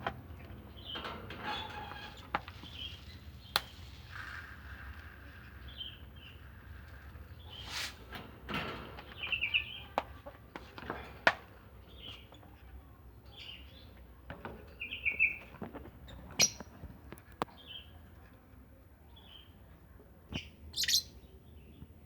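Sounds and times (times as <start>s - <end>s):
lovebirds chirping: 2.0s - 8.1s, 9.0s - 10.4s, 11.7s - 14.2s, 14.8s - 18.2s, 19.1s - 21.9s.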